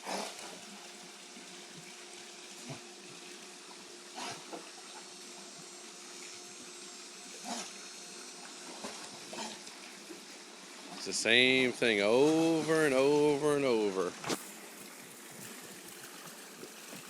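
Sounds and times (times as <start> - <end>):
water fountain splashing: 9.7 - 17.0.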